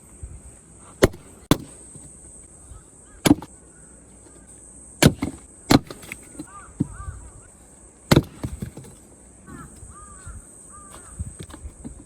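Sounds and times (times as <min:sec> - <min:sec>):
steady high hiss: 0:00.0 - 0:12.0
axe splitting firewood: 0:00.8 - 0:02.2, 0:03.2 - 0:03.6, 0:05.0 - 0:07.0, 0:08.1 - 0:09.8, 0:10.9 - 0:12.0
faint bird calls: 0:02.4 - 0:04.7, 0:06.3 - 0:07.6, 0:09.4 - 0:11.9.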